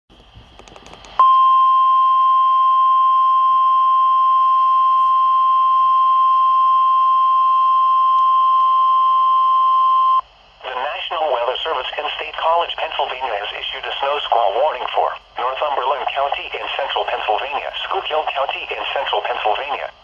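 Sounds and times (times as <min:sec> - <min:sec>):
steady high alarm tone: 0:01.2 - 0:10.2.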